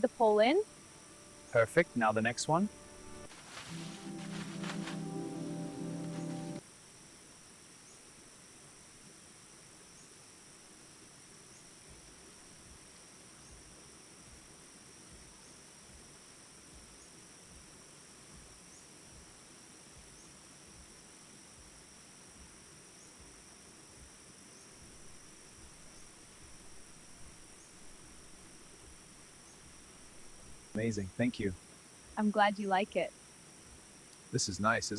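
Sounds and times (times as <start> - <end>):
crickets chirping: 0.0 - 6.6, 24.8 - 34.9
soft low background noise: 0.0 - 34.9.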